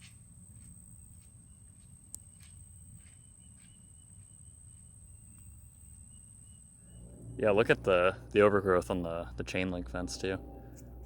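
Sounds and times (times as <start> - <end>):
faint chirps: 1.4 - 8.2
high-pitched whine: 3.3 - 11.0
low rumble: 6.8 - 11.0.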